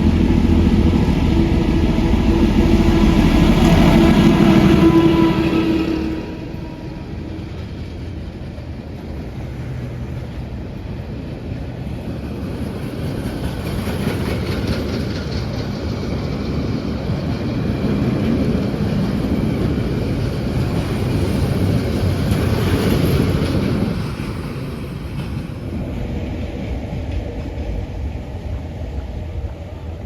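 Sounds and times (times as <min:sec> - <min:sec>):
train wheels on rails: 0:00.0 - 0:30.0.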